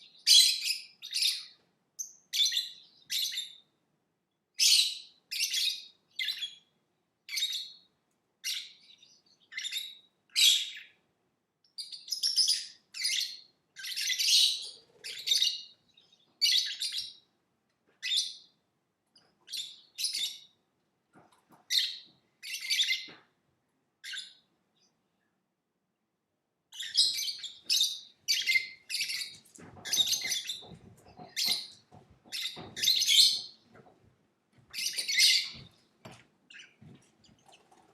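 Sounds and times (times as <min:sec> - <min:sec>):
lovebird chirping: 0:26.7 - 0:33.6, 0:34.7 - 0:35.7.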